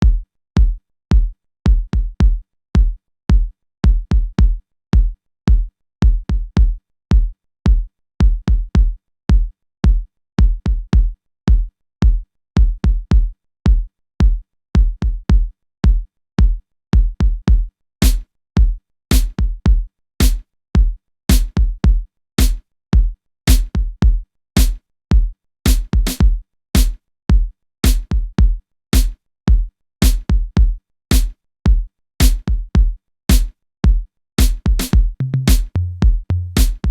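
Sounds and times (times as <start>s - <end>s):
heavy kick drum beat: 0.0s - 36.9s
bright sharp drum hits: 34.4s - 35.7s, 36.6s - 36.9s.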